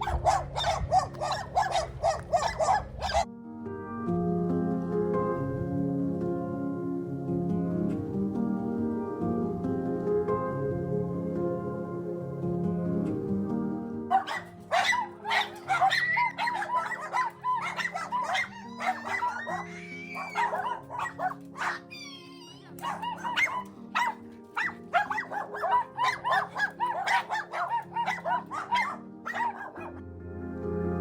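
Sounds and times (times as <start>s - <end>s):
dog whining: 0.0s - 3.3s, 14.1s - 30.0s
dogs yipping and barking: 0.0s - 3.3s, 14.1s - 30.0s
soft background music: 0.0s - 31.0s.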